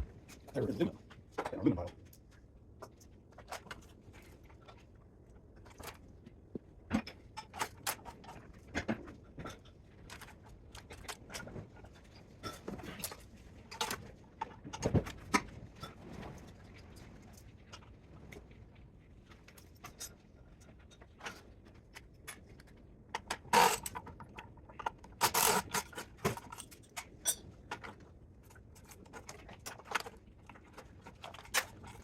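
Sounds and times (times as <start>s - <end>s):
hand tools and metal parts clicking: 23.2s - 27.9s.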